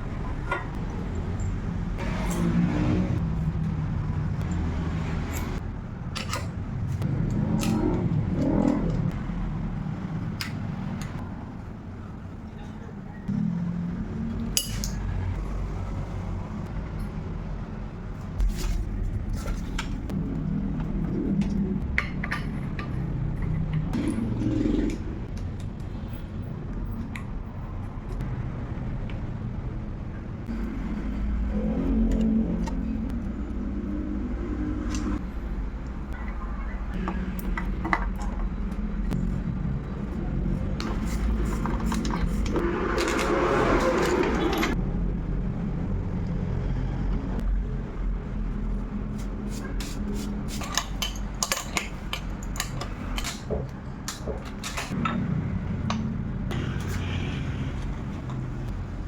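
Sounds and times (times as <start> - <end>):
steady low rumble: 13.3 - 42.9, 44.6 - 50.4.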